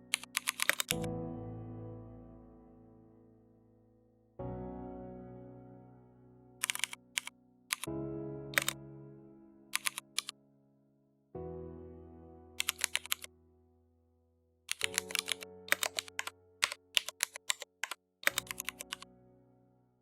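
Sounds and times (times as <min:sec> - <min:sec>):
computer keyboard typing: 0:00.0 - 0:01.1, 0:06.6 - 0:07.9, 0:08.6 - 0:08.8, 0:09.8 - 0:10.3, 0:12.6 - 0:13.3, 0:14.7 - 0:19.0.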